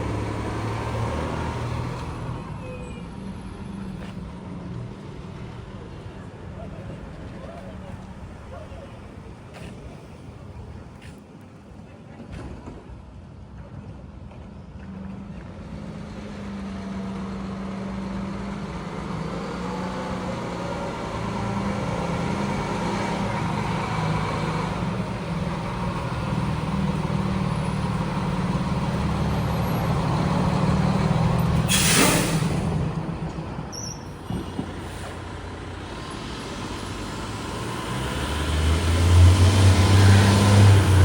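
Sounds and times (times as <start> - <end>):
fire truck diesel engine: 0.0 - 11.0, 14.9 - 41.0
air brakes hissing: 31.0 - 35.4.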